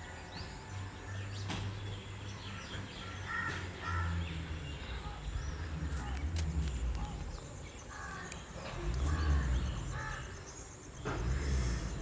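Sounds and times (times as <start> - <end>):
crow cawing: 3.2 - 4.2.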